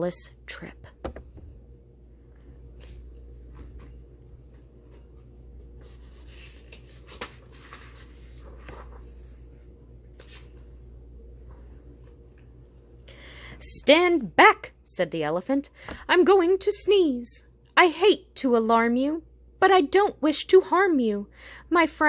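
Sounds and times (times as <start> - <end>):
low electrical hum: 0.0 - 22.0
book pages rustling: 2.4 - 12.5.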